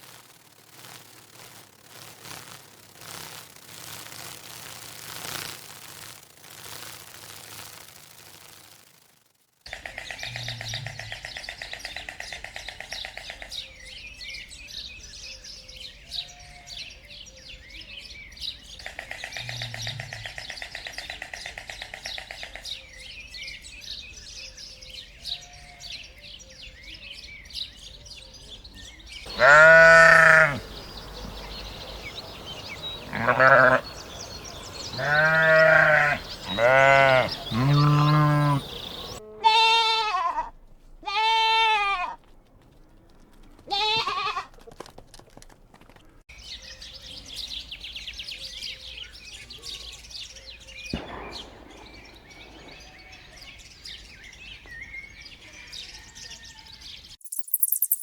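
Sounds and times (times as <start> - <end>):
loud bleats: 29.3 - 31.7, 33.0 - 34.0, 34.9 - 42.2, 43.7 - 44.5
rapid chirping and trilling: 29.3 - 39.2, 57.2 - 58.0.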